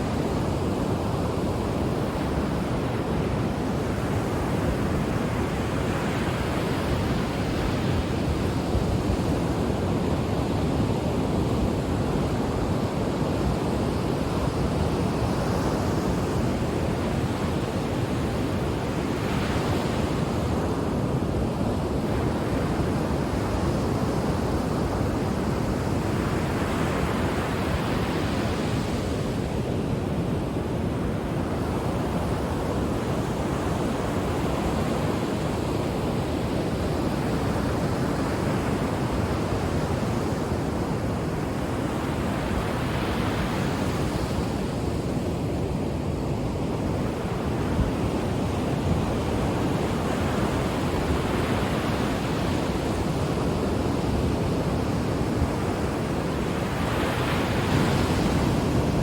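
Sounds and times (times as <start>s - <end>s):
ocean waves breaking on shore: 0.0s - 59.0s.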